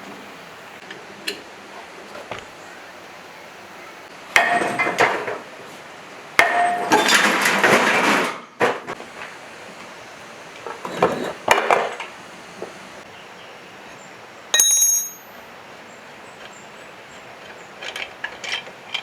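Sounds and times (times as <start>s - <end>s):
metal tools clanking and rattling: 6.4s - 8.4s, 14.6s - 15.4s.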